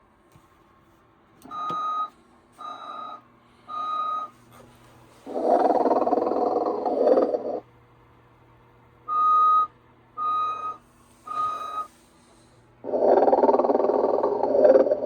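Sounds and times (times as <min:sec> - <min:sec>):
animated toy figure snoring: 0:05.3 - 0:07.6, 0:12.8 - 0:15.0.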